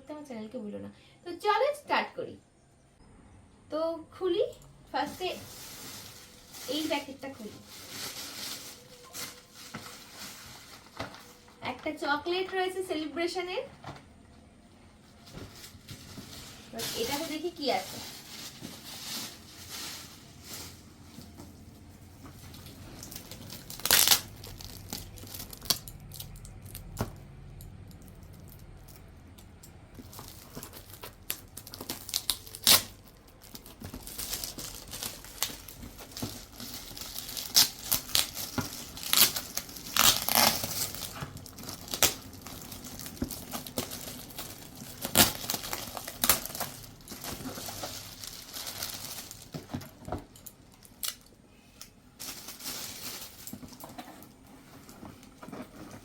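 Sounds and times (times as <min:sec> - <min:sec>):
gift wrapping crinkling and tearing: 0:05.0 - 0:11.7, 0:15.1 - 0:27.1, 0:30.0 - 0:51.3, 0:52.2 - 0:56.0.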